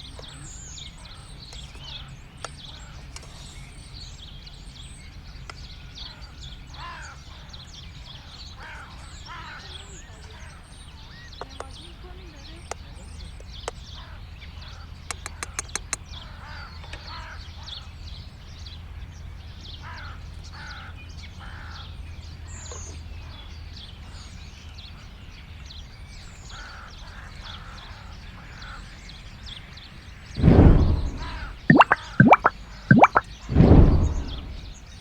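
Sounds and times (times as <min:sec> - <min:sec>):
birds chirping: 0:30.9 - 0:33.2.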